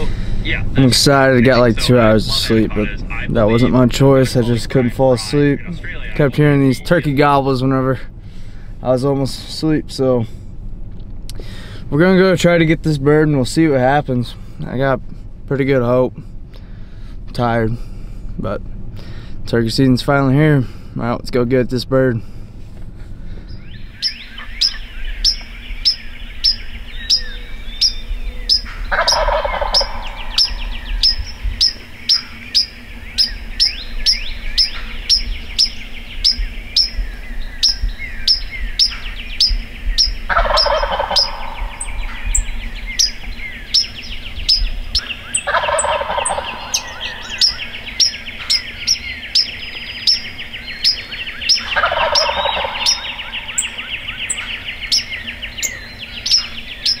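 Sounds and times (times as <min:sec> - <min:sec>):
turkey gobbling: 0:00.0 - 0:07.6, 0:23.6 - 0:57.0
birds singing: 0:00.0 - 0:10.1, 0:22.9 - 0:57.0
small bird chirping: 0:23.4 - 0:57.0.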